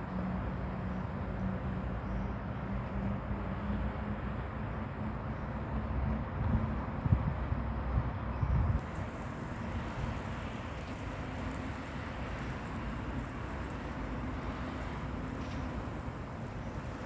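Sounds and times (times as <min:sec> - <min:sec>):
outdoor background noise: 0:00.0 - 0:17.0
wind buffeting microphone: 0:06.1 - 0:17.0.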